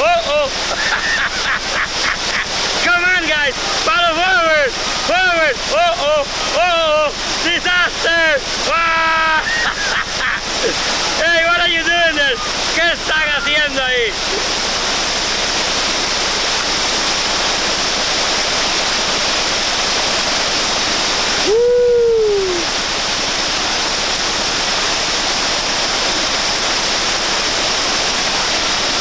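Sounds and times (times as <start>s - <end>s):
river rapids rushing: 0.0s - 29.0s
person shouting: 21.4s - 22.7s.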